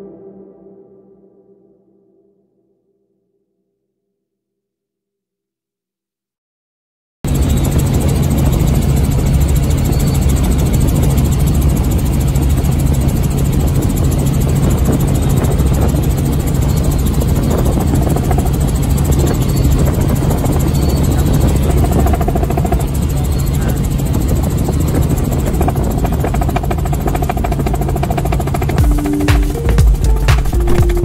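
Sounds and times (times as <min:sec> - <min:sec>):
helicopter engine and rotor drone: 0:07.3 - 0:31.0.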